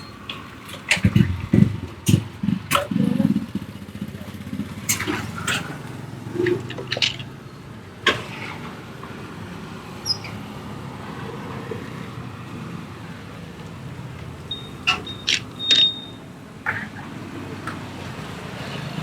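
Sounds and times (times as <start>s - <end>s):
traffic rumble: 0.0s - 19.0s
high beep: 14.5s - 16.2s.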